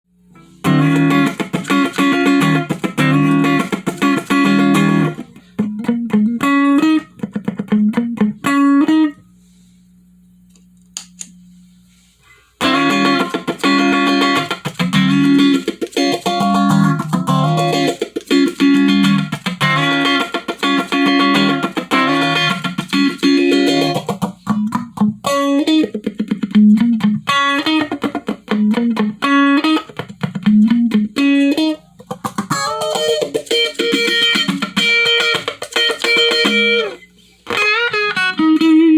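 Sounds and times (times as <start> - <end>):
electric guitar chords with phaser: 0.4 - 9.2, 12.6 - 38.9
low steady hum: 8.0 - 14.4.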